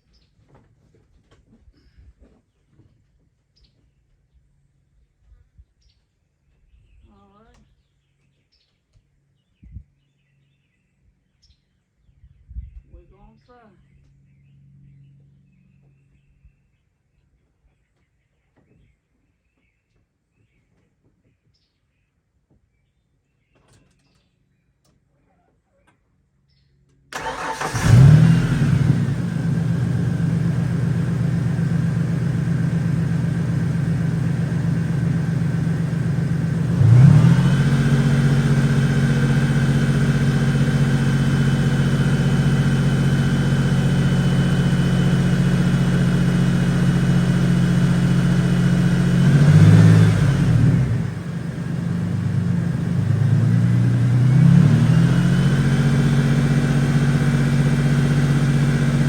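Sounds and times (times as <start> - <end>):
truck engine starting and idling: 27.1 - 59.0.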